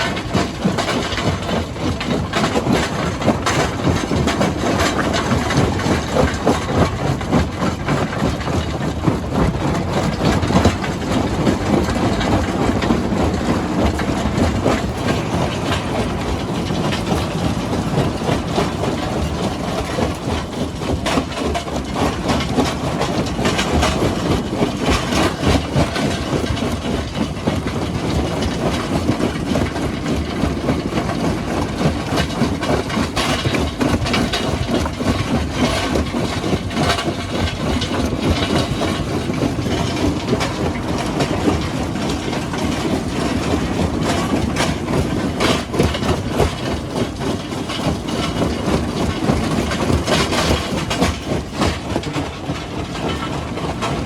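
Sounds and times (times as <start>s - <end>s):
diesel engine rumble: 0.0s - 28.9s.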